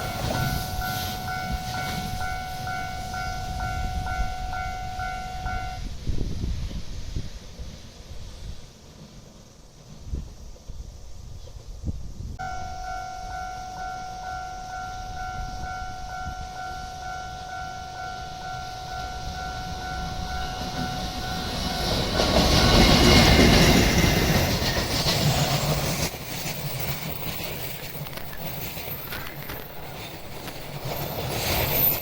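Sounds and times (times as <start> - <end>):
two-tone crossing alarm bell: 0.0 - 5.9, 12.4 - 26.1
train passing: 0.0 - 32.0.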